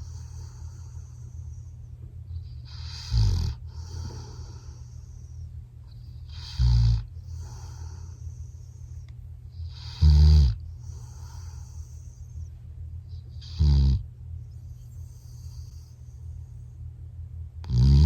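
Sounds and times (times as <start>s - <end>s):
dog breathing softly: 0.0s - 16.9s
dog snoring: 2.3s - 12.4s, 13.1s - 14.1s, 14.7s - 16.3s, 17.6s - 18.0s.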